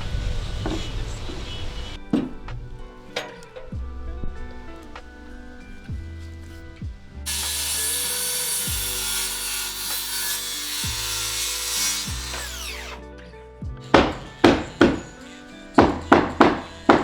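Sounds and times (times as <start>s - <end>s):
power saw cutting wood: 0.0s - 2.5s, 4.6s - 13.1s, 13.8s - 17.0s
saw motor winding down: 7.2s - 13.0s.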